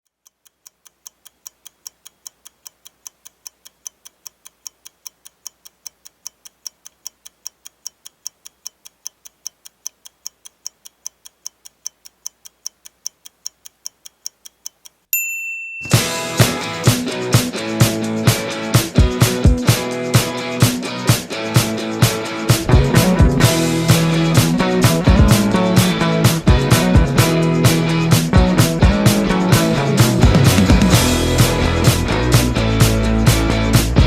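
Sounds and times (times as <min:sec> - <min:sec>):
clock-like ticking: 0:00.0 - 0:15.1
short high ding: 0:15.2 - 0:16.9
rock music with guitar and drums: 0:15.8 - 0:34.0.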